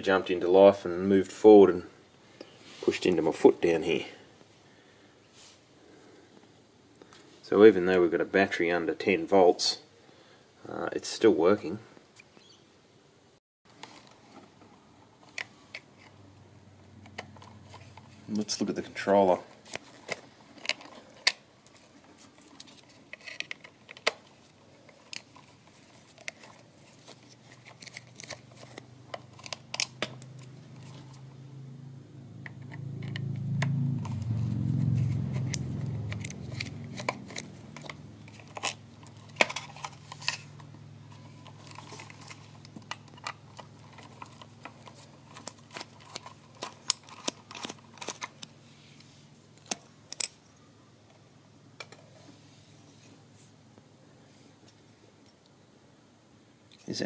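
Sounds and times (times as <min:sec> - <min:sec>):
low hum: 0:27.4 - 0:46.8.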